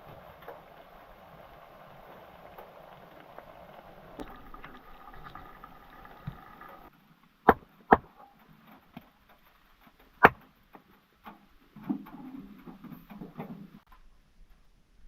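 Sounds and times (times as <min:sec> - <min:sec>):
rustling and shuffling: 0:08.2 - 0:15.0.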